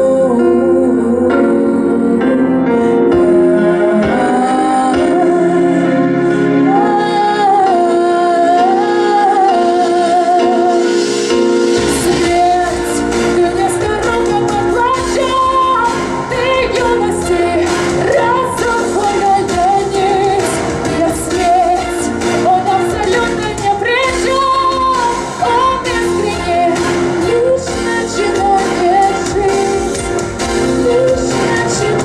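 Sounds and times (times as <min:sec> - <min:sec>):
woman singing a pop song: 0:00.0 - 0:32.0
bass and drum beat: 0:11.8 - 0:32.0.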